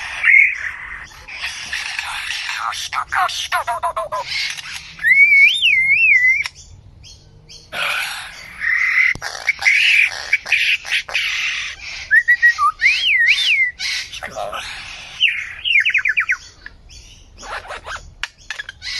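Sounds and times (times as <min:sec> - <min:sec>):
bird scratchy chattering: 0:00.0 - 0:05.0, 0:08.3 - 0:12.0, 0:17.4 - 0:18.9
bird warbling whistles: 0:05.0 - 0:06.6, 0:12.0 - 0:13.8.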